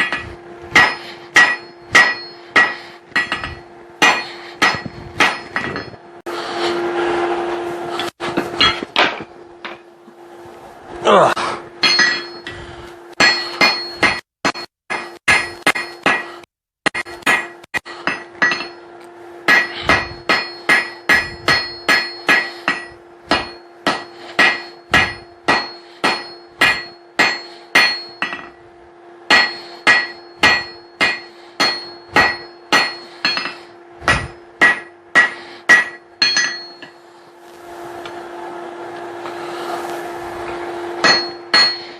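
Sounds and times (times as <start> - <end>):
hammer ringing on anvil: 0.0 - 6.0, 8.0 - 9.8, 11.8 - 12.6, 13.2 - 18.9, 19.5 - 28.6, 29.3 - 37.0, 40.5 - 41.9
steady hum: 0.0 - 41.9.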